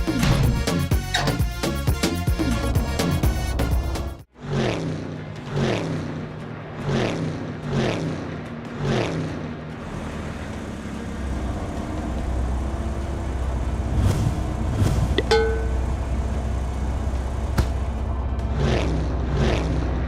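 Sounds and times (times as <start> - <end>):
low engine-like rumble: 5.4 - 20.0.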